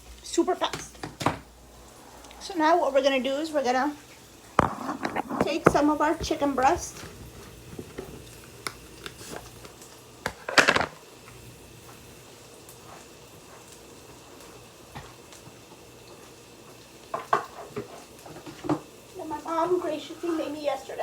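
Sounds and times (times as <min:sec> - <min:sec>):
faint steady hiss: 0:00.0 - 0:21.0
dishes and utensils clinking: 0:04.6 - 0:07.1.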